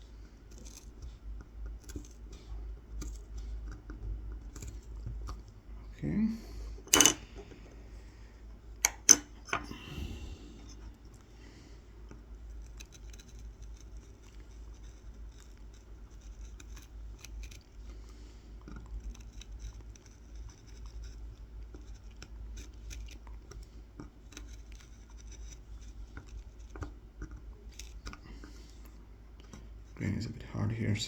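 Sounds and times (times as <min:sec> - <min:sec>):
knife scratching wood: 0:00.2 - 0:05.4, 0:10.6 - 0:30.1.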